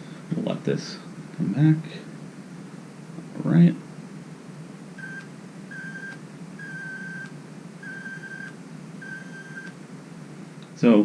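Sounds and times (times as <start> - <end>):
high-pitched electronic whine: 5.0 - 9.8.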